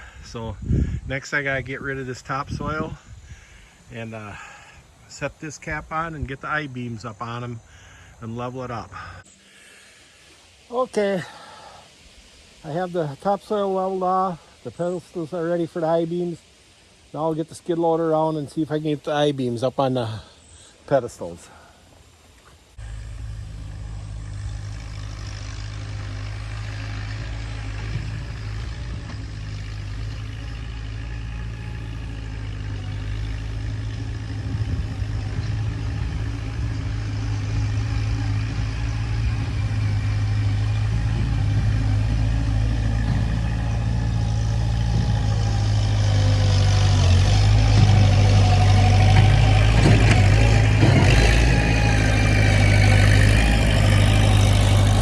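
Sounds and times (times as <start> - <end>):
skid loader engine running: 0.0 - 10.1, 22.8 - 55.0
high whine: 22.8 - 30.2
metal clanks: 49.0 - 52.6.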